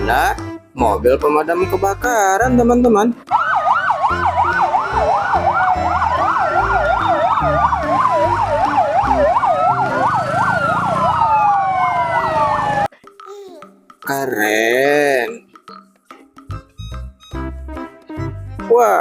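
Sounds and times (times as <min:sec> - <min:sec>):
fire engine siren wailing: 0:03.3 - 0:12.9.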